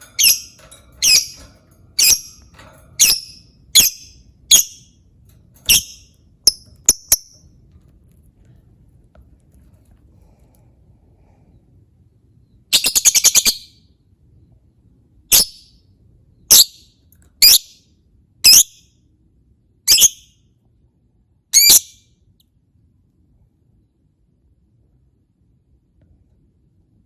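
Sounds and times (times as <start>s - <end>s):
bird chattering: 0.2s - 1.4s, 3.0s - 4.8s
shrill bird calls: 0.2s - 1.4s, 2.0s - 2.3s, 3.0s - 4.8s, 5.7s - 7.3s, 12.7s - 13.8s, 16.5s - 16.8s, 17.4s - 17.8s, 18.5s - 18.8s, 19.9s - 20.3s, 21.6s - 22.0s.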